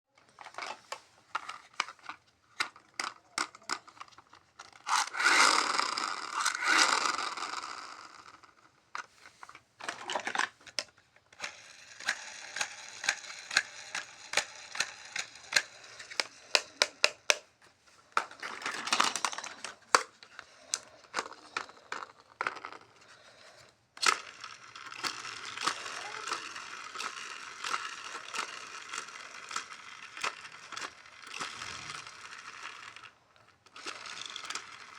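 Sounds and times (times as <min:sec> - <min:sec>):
plastic clicks and taps: 0:14.3 - 0:17.5.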